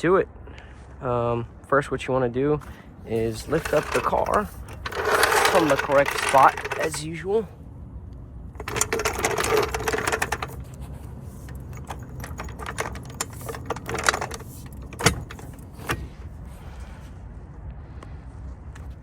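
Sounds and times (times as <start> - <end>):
car jack clicking rattle: 2.6 - 7.1, 8.6 - 16.2.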